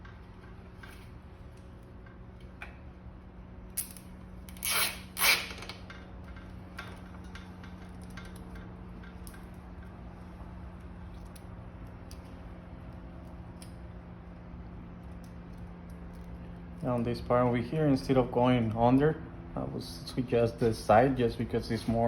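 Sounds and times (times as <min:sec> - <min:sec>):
cable ties zipping tight: 0:03.8 - 0:05.8.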